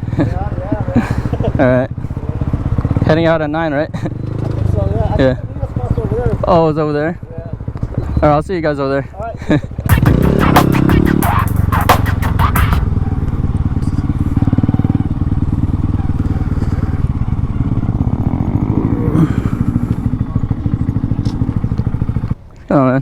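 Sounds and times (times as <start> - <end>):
motorcycle engine running: 0.0 - 3.6, 4.2 - 6.7, 9.7 - 22.5
rapid sharp clicks: 9.9 - 12.9.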